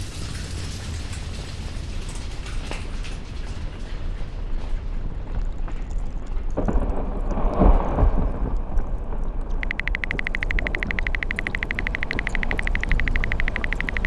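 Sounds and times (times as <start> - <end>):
crackling rumble of ice: 0.0 - 14.0
deep steady drone: 9.6 - 14.0
fast rhythmic clicking: 9.6 - 14.0.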